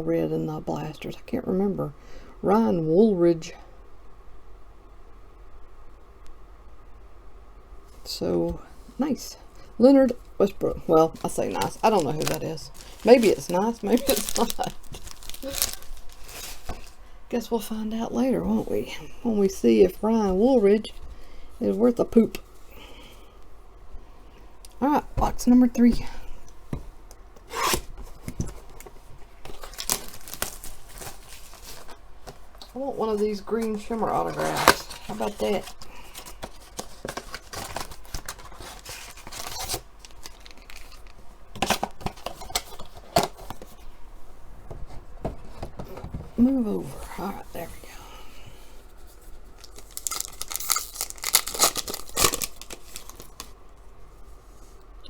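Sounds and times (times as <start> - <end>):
card packaging tearing and crinkling: 11.1 - 17.0, 27.5 - 32.4, 33.1 - 43.6, 49.6 - 53.6.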